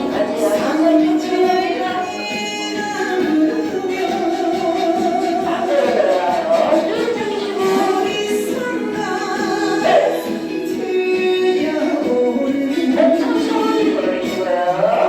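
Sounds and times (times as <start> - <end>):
woman singing pop song: 0.0 - 15.0.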